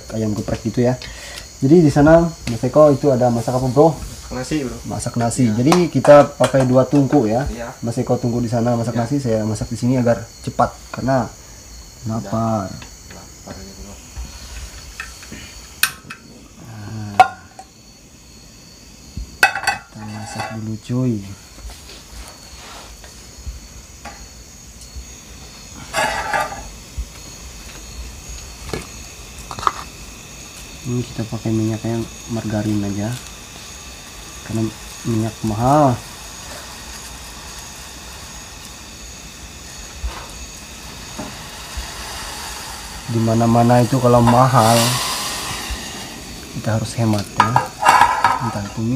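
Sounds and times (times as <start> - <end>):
insect trill: 0.0 - 48.9
margarine sizzling in a pan: 0.0 - 48.9
pots and utensils clinking: 15.8 - 16.2, 17.2 - 17.7, 19.4 - 20.6, 25.9 - 26.7, 47.2 - 48.9.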